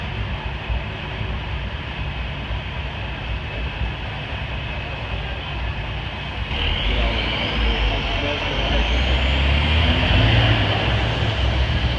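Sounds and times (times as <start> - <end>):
car engine rumble: 0.0 - 11.9
road noise: 6.0 - 11.9
faint rising whine: 6.5 - 11.9.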